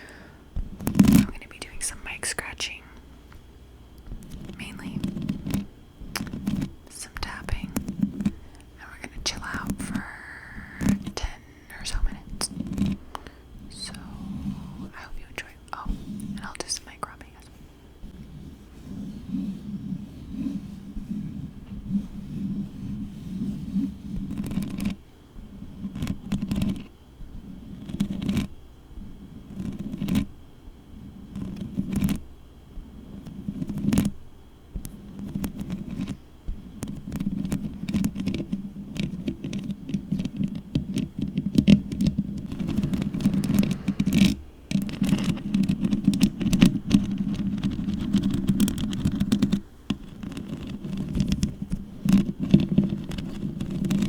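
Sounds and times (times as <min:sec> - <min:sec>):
fingernails scratching a microphone: 0:00.6 - 0:02.6, 0:04.1 - 0:32.3, 0:32.9 - 0:54.0.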